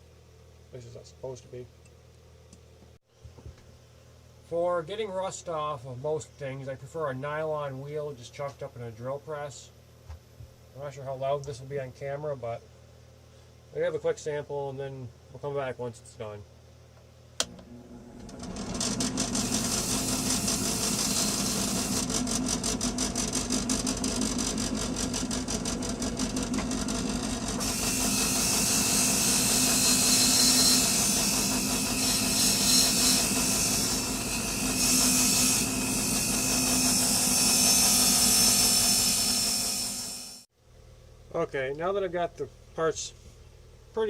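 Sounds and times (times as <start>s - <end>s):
drill press motor hum: 17.4s - 40.4s.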